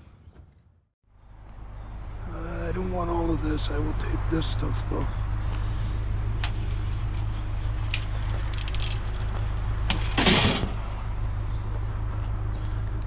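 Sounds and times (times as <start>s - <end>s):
scraping clatter: 6.5s - 10.9s
scrap metal clicking and rattling: 7.8s - 10.8s.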